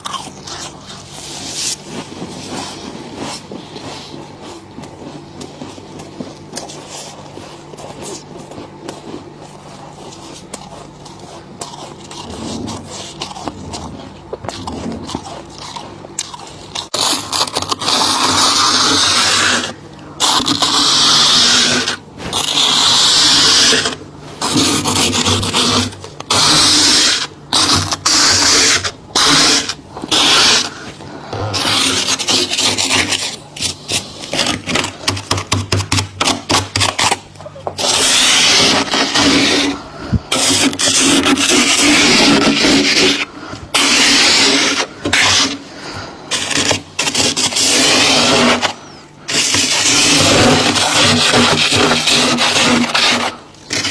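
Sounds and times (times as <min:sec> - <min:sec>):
frost being scraped off: 0:00.0 - 0:53.9.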